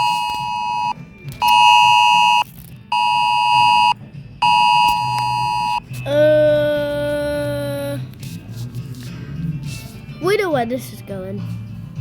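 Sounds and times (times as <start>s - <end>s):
dual-tone alarm beeps: 0.0s - 5.8s.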